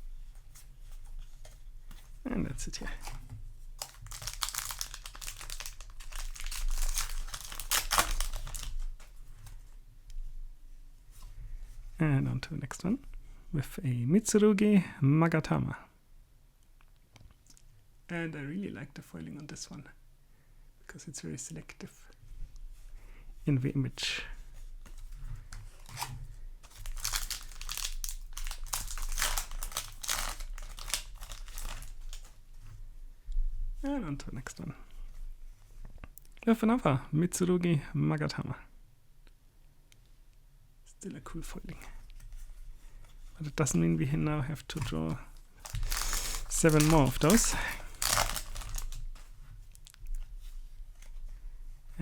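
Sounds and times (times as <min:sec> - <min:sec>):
foil wrapper crinkling: 0:02.9 - 0:09.0, 0:25.7 - 0:32.4, 0:44.7 - 0:49.3.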